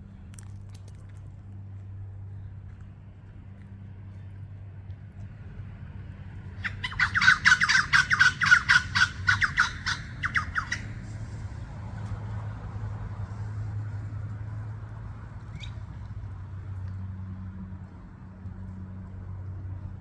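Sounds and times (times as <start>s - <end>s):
parrot harsh squawks: 6.6s - 10.9s.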